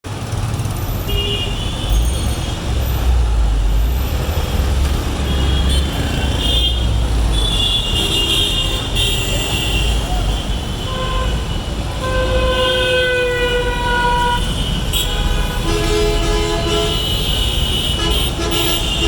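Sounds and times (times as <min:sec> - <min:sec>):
traffic engines rumbling: 0:00.0 - 0:19.0.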